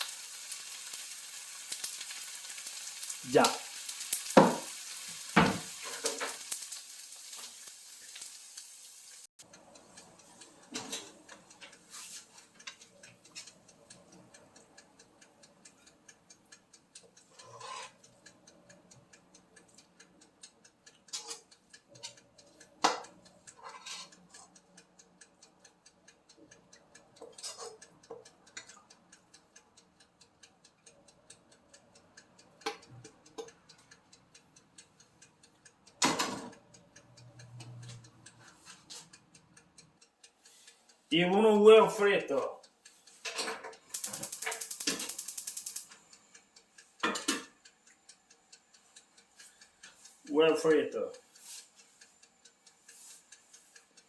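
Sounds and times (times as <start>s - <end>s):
rice sizzling in a frying pan: 0.0s - 9.4s, 11.8s - 12.5s, 43.9s - 45.9s, 51.4s - 51.7s, 52.9s - 53.7s
faint clock-like ticking: 0.0s - 54.0s
utensils knocking and clattering: 43.2s - 45.8s.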